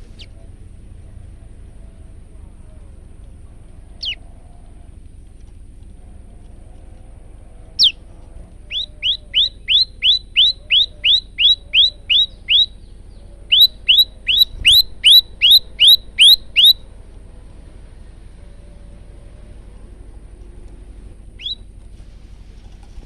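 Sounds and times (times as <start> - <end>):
bird whistling falling notes: 7.8 - 8.0, 8.7 - 16.8, 21.4 - 21.7.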